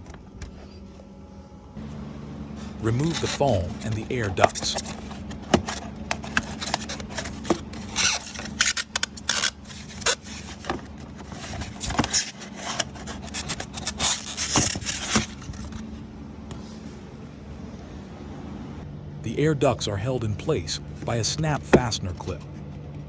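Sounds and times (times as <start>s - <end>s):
foam scraping and rubbing: 2.6s - 15.9s.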